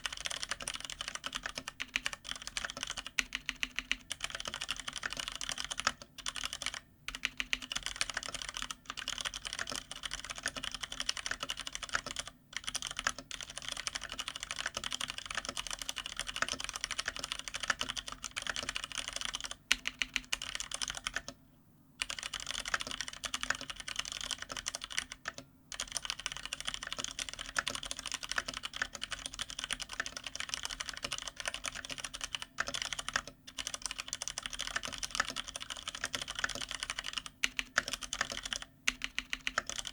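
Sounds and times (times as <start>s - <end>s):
fast mechanical keyboard typing: 0.0s - 21.4s, 22.0s - 39.9s.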